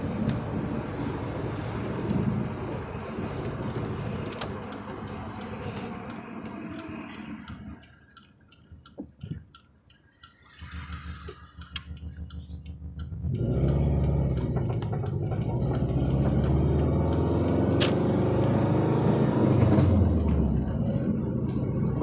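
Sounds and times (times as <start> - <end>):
car engine rumbling: 0.0 - 22.0
steady low hum: 0.0 - 22.0
quick regular ticking: 3.3 - 18.8.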